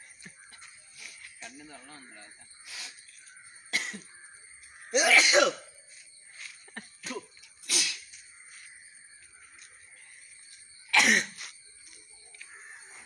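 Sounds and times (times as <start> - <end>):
people coughing: 3.8 - 4.0, 5.0 - 5.6, 11.0 - 11.4
people sneezing: 5.0 - 5.6, 7.0 - 8.1, 11.0 - 11.5.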